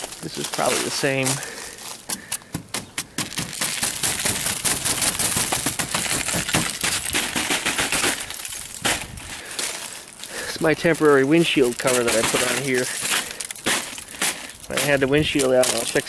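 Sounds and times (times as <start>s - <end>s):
ice on tarp cracking: 3.3s - 16.0s.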